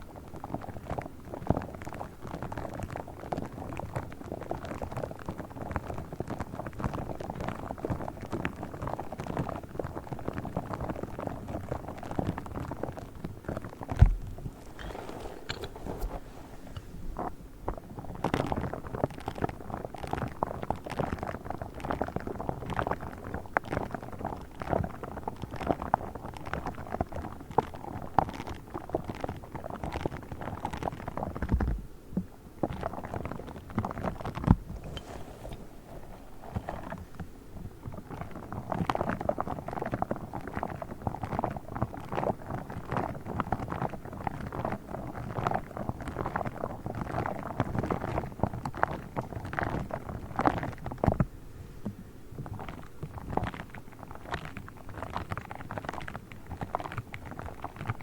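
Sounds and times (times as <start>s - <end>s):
crackly scratching and tapping: 0.0s - 58.0s
soft low thumps: 14.0s - 17.9s.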